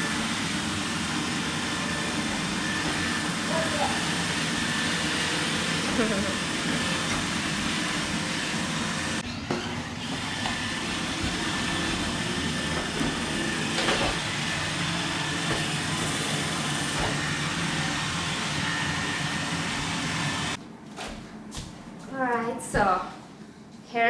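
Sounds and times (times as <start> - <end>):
robot vacuum humming: 0.0 - 20.6.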